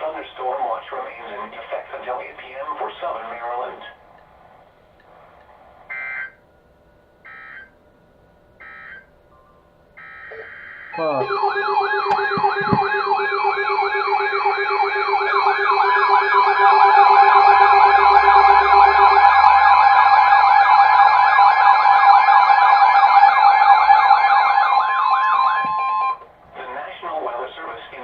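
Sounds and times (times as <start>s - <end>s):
electronic siren wailing: 5.9s - 6.4s, 7.2s - 7.8s, 8.6s - 9.1s, 10.0s - 26.3s.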